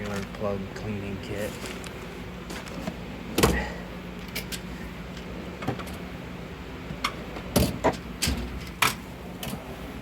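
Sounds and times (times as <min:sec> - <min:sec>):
steel drawers shutting and opening: 0:07.0 - 0:09.7.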